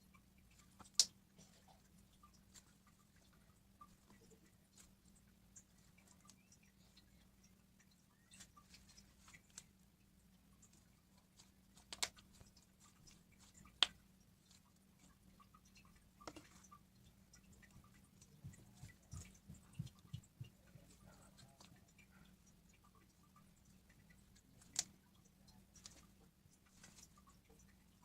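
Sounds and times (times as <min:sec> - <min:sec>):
steady low hum: 0:00.0 - 0:28.0
slime squelching and clicking: 0:00.6 - 0:01.2, 0:10.5 - 0:22.0, 0:22.8 - 0:27.7
soft low thuds: 0:18.3 - 0:20.9.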